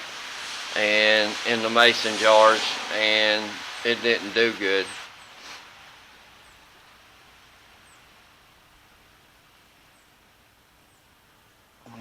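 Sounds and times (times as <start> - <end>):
faint outdoor hiss: 0.0 - 12.0.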